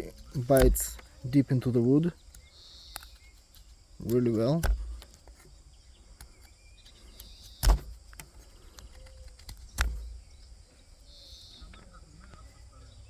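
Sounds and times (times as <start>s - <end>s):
knife chopping into wood: 0.2s - 1.1s, 4.0s - 5.4s, 7.2s - 8.4s, 9.4s - 10.4s.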